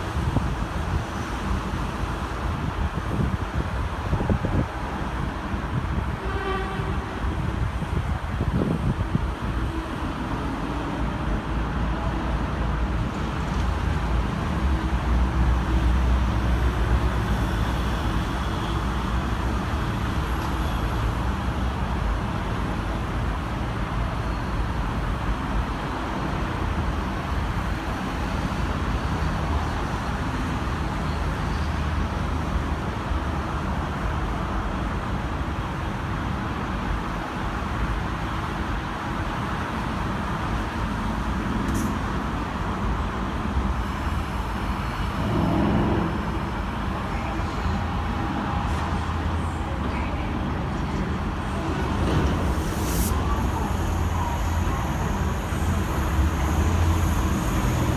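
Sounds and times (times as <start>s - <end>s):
diesel train engine idling: 40.1s - 57.9s.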